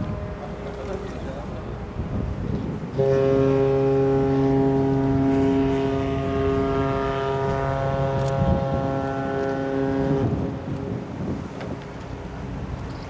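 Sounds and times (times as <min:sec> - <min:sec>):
wind noise on microphone: 0:00.0 - 0:13.0
ship's whistle blast: 0:02.9 - 0:10.3.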